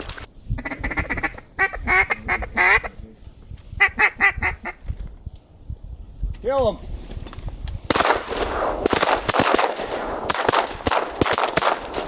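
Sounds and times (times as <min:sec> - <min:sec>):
duck quacking: 0:00.6 - 0:03.0, 0:03.8 - 0:04.8.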